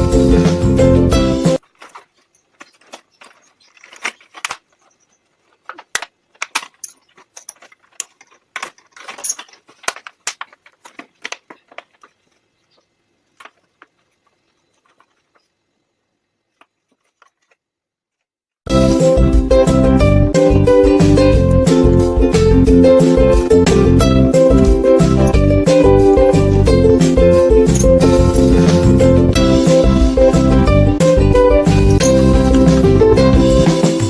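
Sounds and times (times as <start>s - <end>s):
background music: 0.0s - 1.6s, 18.7s - 34.0s
hands working materials clicking: 1.6s - 12.5s, 13.3s - 15.5s, 27.6s - 28.2s.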